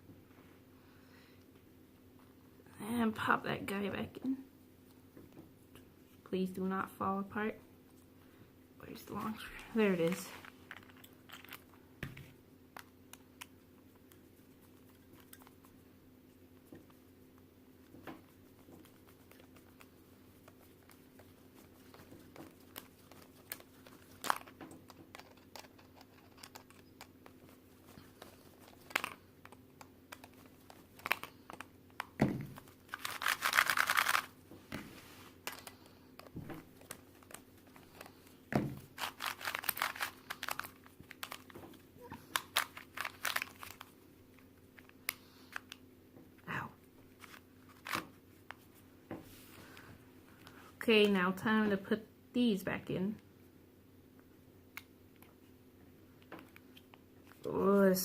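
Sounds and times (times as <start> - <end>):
plastic puzzle pieces clicking: 24.2 - 27.1.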